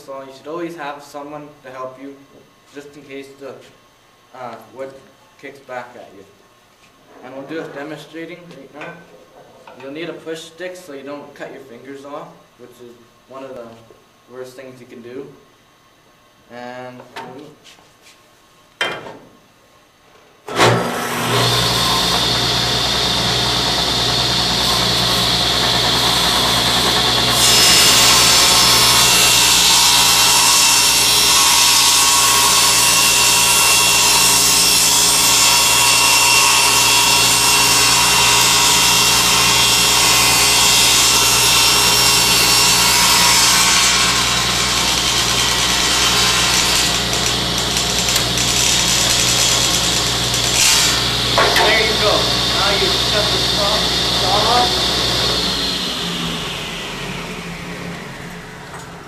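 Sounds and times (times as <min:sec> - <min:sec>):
board cut by saw blade: 0:20.5 - 0:59.0
table saw running: 0:20.5 - 0:59.0.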